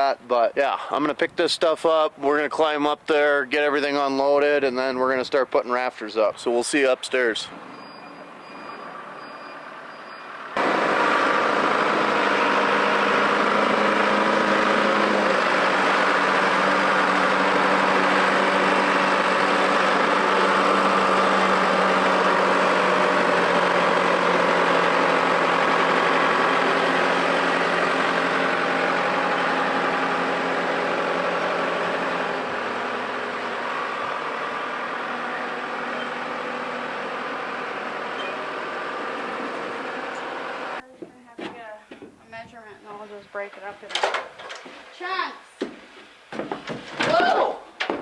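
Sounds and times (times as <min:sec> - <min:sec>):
forklift engine running: 0:07.6 - 0:40.8.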